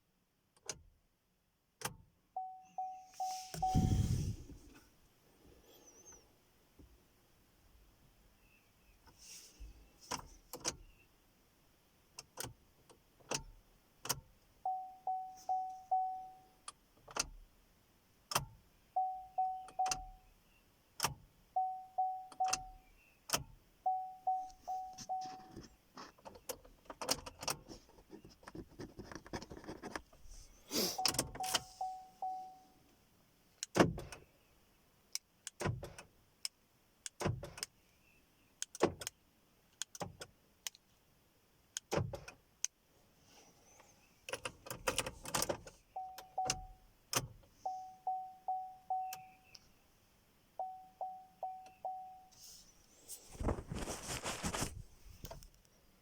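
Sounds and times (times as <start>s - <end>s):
dashboard warning chime beeping: 2.4s - 4.6s, 14.6s - 16.6s, 18.9s - 20.2s, 21.5s - 22.8s, 23.8s - 25.6s, 30.8s - 32.8s, 45.9s - 46.9s, 47.6s - 49.5s, 50.6s - 52.4s.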